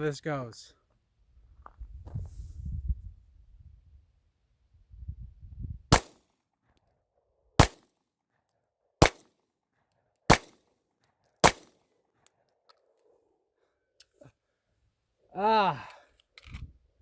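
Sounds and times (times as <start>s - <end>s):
pistol shots: 5.9s - 6.2s, 7.6s - 7.8s, 9.0s - 9.3s, 10.3s - 10.6s, 11.4s - 11.7s.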